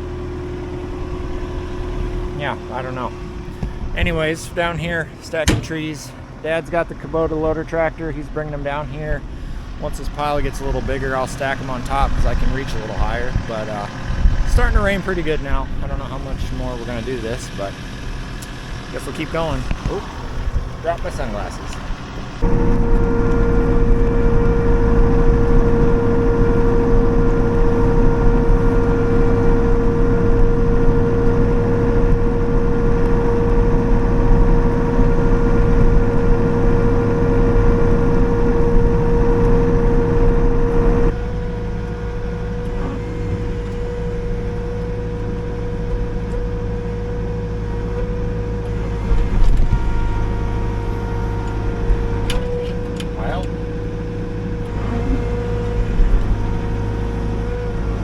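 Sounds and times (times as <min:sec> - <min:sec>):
excavator engine rumble: 0:00.0 - 0:58.0
high hydraulic whine: 0:00.8 - 0:58.0.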